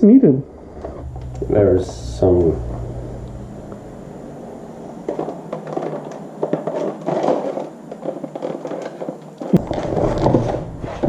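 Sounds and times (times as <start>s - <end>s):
rustling handling noise: 5.0s - 11.0s
small crackles and taps: 5.2s - 10.3s.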